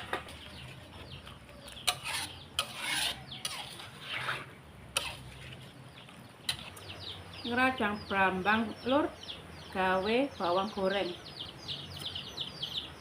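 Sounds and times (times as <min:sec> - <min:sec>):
rasping scraping noises: 0:00.0 - 0:05.8.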